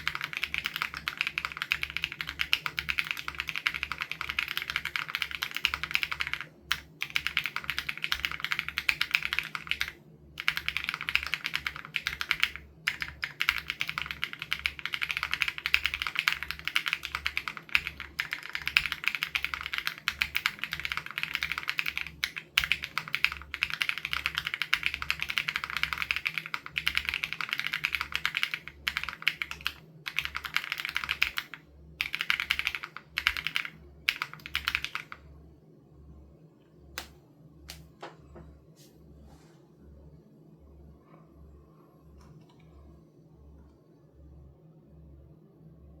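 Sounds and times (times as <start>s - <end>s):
mechanical keyboard typing: 0.0s - 35.2s.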